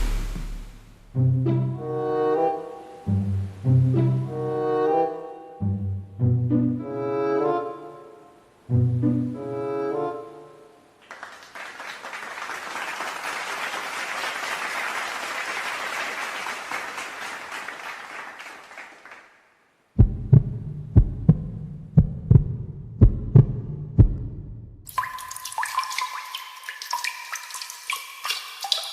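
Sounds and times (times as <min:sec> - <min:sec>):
noisy hiss: 0:00.0 - 0:01.2
low heartbeat thumps: 0:20.0 - 0:24.9.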